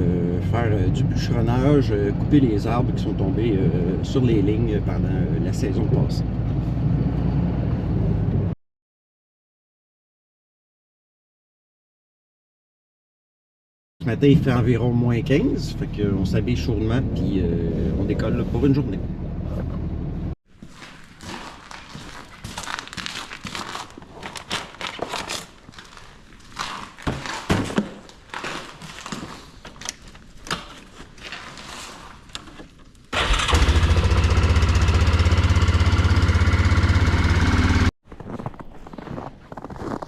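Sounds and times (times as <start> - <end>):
engine running loud: 33.2 - 37.9.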